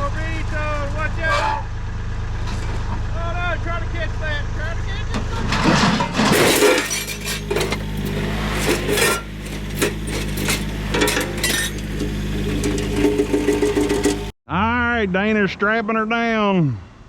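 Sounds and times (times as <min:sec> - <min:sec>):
tractor engine running: 0:00.0 - 0:14.4
metal scrap clanking: 0:05.4 - 0:14.3.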